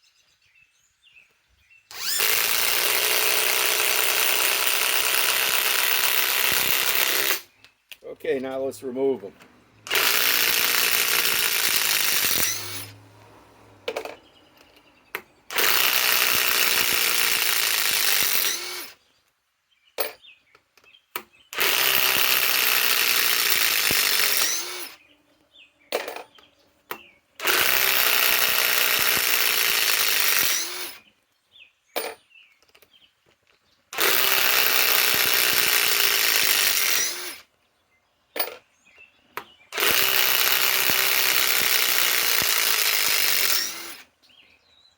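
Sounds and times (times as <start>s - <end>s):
impact wrench hammering: 9.8s - 13.0s, 21.2s - 25.0s, 34.0s - 37.4s, 38.4s - 38.6s, 39.8s - 44.1s.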